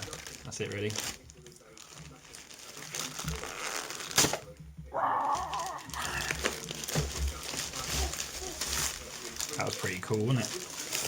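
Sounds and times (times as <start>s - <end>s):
packaging crinkling and tearing: 0.0s - 11.0s
sharp crack: 3.7s - 4.5s.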